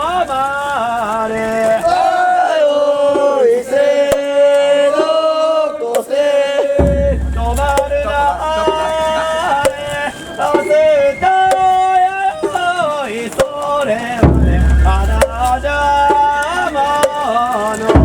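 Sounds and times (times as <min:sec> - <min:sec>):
low rumble: 0:06.8 - 0:09.4
sharp drum strikes: 0:06.8 - 0:10.0, 0:14.2 - 0:17.3
high wavering melody: 0:07.0 - 0:12.6.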